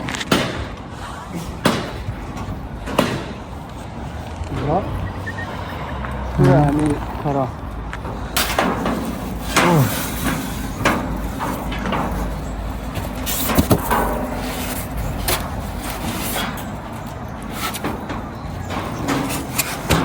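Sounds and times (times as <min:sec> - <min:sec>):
knocks and clatter: 0:00.0 - 0:20.0
low rumble of machine: 0:02.1 - 0:17.4
downward-sliding squeal: 0:04.8 - 0:07.0.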